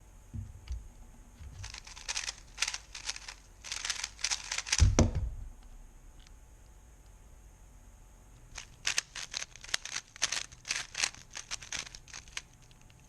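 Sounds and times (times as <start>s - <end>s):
puzzle cube clicking as turned: 1.6s - 5.0s, 8.5s - 13.0s
heavy low thump: 4.7s - 6.1s.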